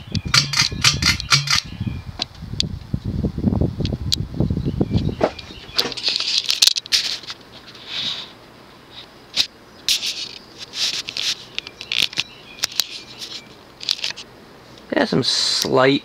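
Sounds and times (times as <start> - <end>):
rattly fan blade buzz: 0.0 - 1.7.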